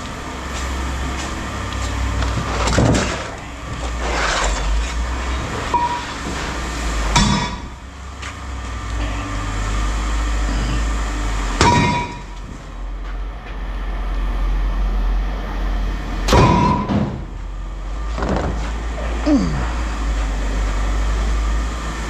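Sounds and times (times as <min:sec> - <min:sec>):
steady low hum: 0:00.0 - 0:22.0
scrap metal clanging: 0:01.8 - 0:09.3, 0:11.6 - 0:12.8.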